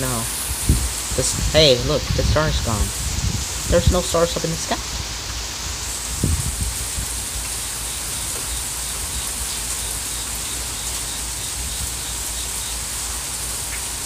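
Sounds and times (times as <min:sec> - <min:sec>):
low thunder rumble: 0:00.0 - 0:05.2, 0:05.8 - 0:07.4
steady rain hiss: 0:00.0 - 0:14.0.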